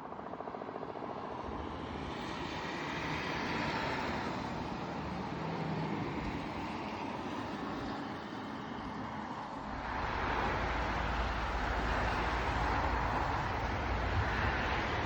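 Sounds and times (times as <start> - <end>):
engine running: 9.6 - 15.0.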